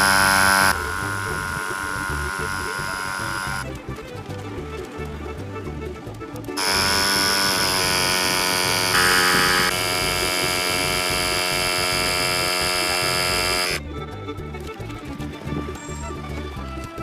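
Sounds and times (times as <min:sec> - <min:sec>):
electric motor buzz: 0:00.0 - 0:03.6, 0:06.6 - 0:13.8.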